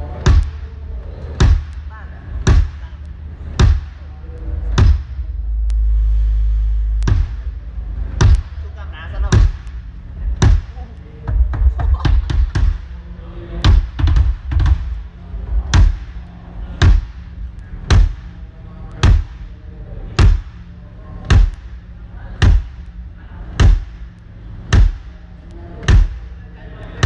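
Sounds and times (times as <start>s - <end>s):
drum hits: 0.2s - 0.7s, 1.4s - 2.9s, 3.6s - 4.0s, 4.7s - 5.3s, 6.9s - 8.6s, 9.2s - 13.0s, 13.6s - 16.2s, 16.8s - 18.4s, 19.0s - 19.5s, 20.2s - 20.6s, 21.3s - 21.8s, 22.4s - 22.9s, 23.6s - 24.1s, 24.7s - 25.2s, 25.9s - 26.3s.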